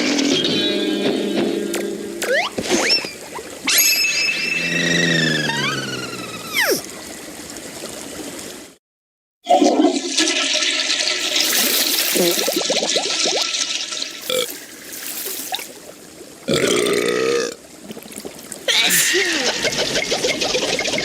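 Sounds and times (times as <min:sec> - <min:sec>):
rushing gurgling water: 0:11.2 - 0:21.0.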